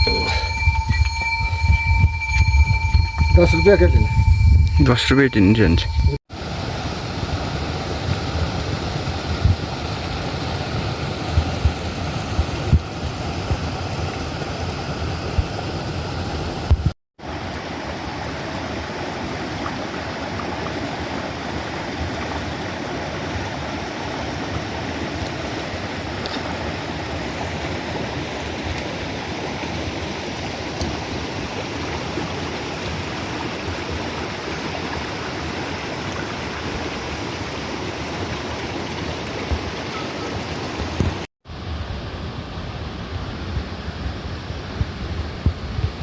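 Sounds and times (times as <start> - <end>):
mountain stream rushing: 6.3 - 41.3.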